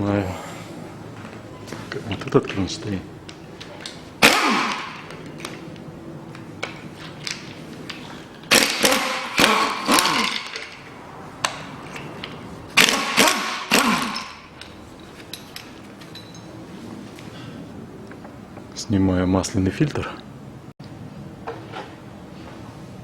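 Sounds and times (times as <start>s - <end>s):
power wrench motor bursts: 4.2s - 5.3s, 8.5s - 10.8s, 12.8s - 14.5s.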